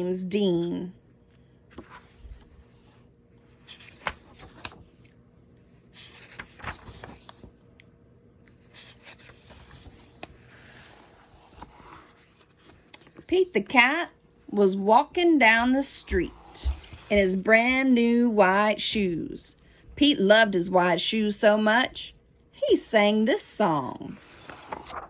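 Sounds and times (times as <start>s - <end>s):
book pages rustling: 1.2s - 13.6s, 15.6s - 18.0s, 24.1s - 25.0s.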